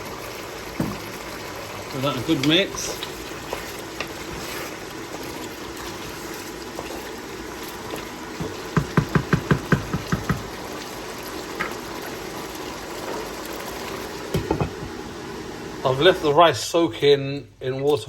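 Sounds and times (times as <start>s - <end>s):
stew being stirred in a pan: 0.0s - 16.5s
low wet knocks: 8.4s - 10.6s.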